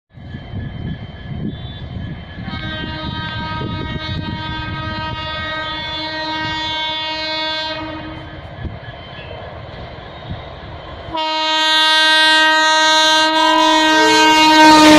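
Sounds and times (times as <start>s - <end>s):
locomotive horn blast: 2.5s - 8.4s, 11.1s - 14.9s
train wheels clattering on track: 6.4s - 11.2s.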